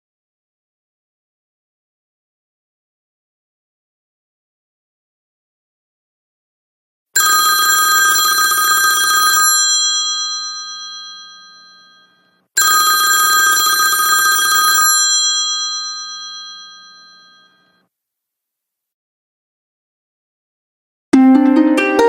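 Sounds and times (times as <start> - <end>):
telephone bell ringtone: 7.2 - 17.8.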